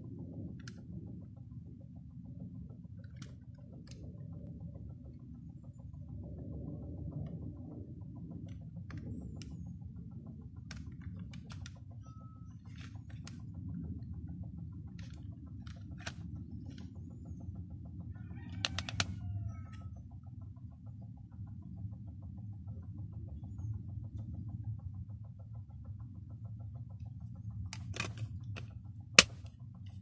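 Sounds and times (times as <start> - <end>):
steady low rumble: 0.0 - 30.0
plastic case clicking and crinkling: 18.6 - 19.2, 27.8 - 29.5.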